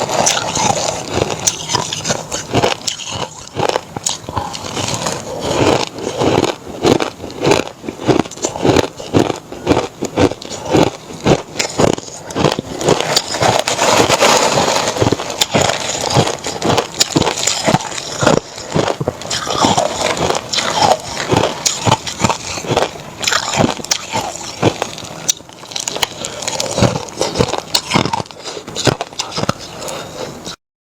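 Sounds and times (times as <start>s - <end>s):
mouth chewing crushed ice: 0.0s - 30.6s.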